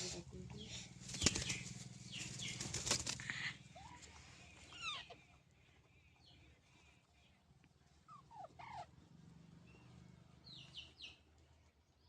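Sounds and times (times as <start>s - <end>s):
parrot flapping wings: 1.0s - 3.4s
parrot chirping calls: 4.7s - 5.4s, 8.1s - 8.9s.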